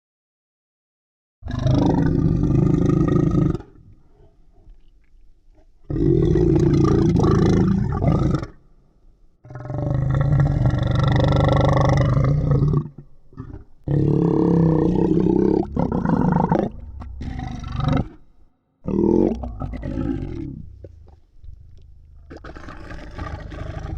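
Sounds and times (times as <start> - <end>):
deep monster growls: 9.5 - 21.2, 22.1 - 23.9.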